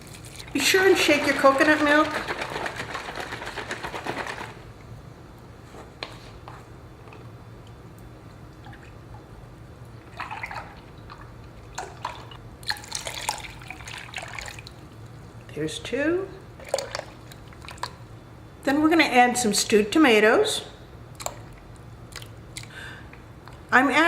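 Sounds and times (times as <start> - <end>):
liquid sloshing in shaken can: 0.0 - 4.6, 10.1 - 14.8, 16.6 - 18.0
dripping and splashing: 10.0 - 14.8, 16.6 - 18.0
liquid pouring into pot: 10.0 - 14.8, 16.6 - 18.0.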